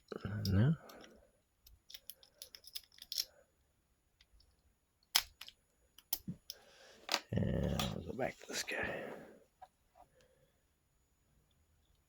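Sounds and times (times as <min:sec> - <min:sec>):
metallic clicks of lock picking: 0:00.4 - 0:03.4, 0:04.2 - 0:06.6.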